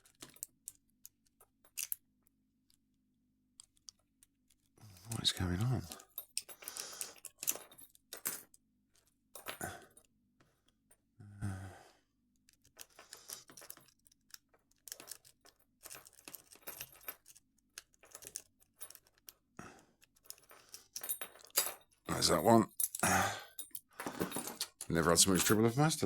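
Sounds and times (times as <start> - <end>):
metallic rattles of lock: 0.0 - 2.0, 12.5 - 19.4, 20.0 - 22.0.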